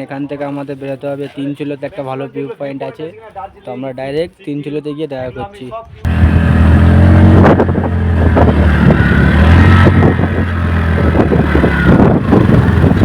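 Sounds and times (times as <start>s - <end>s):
motorcycle engine drone: 6.1s - 13.0s.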